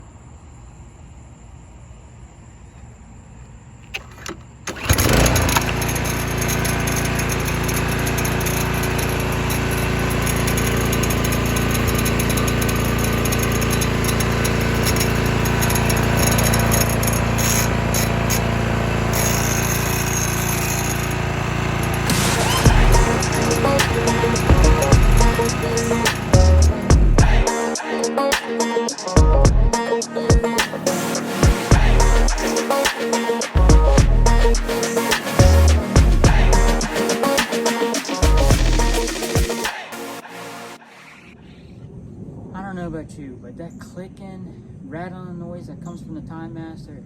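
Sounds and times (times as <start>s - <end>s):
recoil starter pawls rattling: 3.8s - 27.2s
lawn mower engine running: 3.8s - 39.8s
short sharp sounds: 22.1s - 29.2s.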